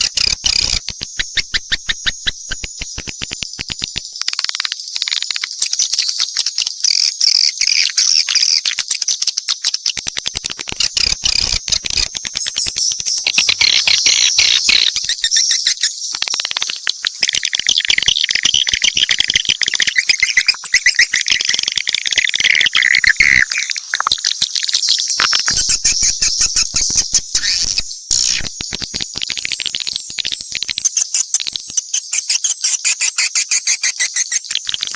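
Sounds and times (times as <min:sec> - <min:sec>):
swiftlets twittering: 0:00.0 - 0:04.3, 0:25.5 - 0:33.2.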